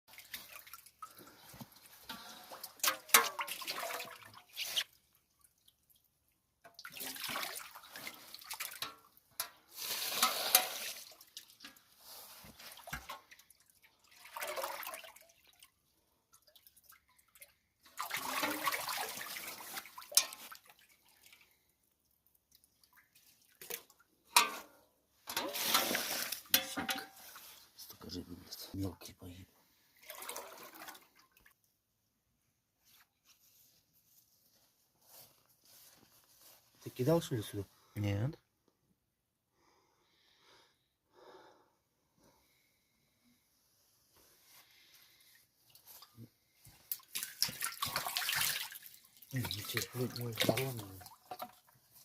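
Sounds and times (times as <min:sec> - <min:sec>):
water splashing and sloshing: 0:00.1 - 0:31.7, 0:44.4 - 0:52.0.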